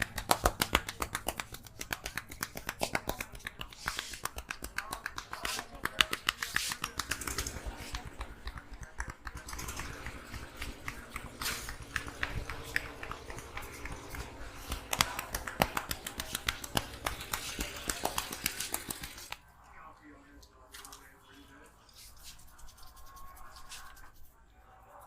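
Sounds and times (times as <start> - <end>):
hands slapping and tapping: 0.0 - 19.4.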